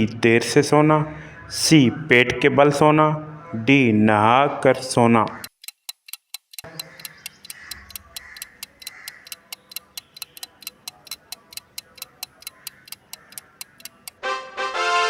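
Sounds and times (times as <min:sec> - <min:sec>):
faint background music: 0:00.0 - 0:05.4
clock ticking: 0:05.2 - 0:14.2.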